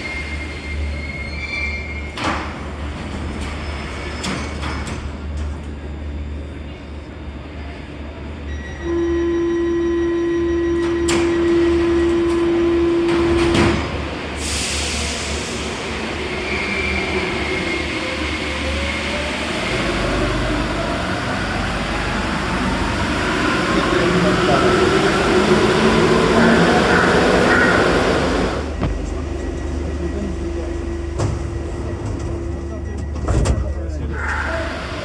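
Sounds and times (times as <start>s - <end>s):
door-closing warning tone: 8.4s - 14.0s, 26.0s - 34.6s.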